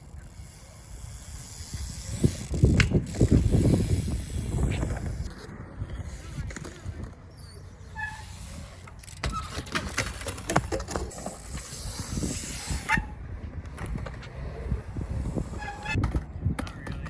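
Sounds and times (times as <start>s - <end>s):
bike tyres rolling on concrete: 0.0s - 17.0s
bike knocks and clatters: 9.0s - 11.8s.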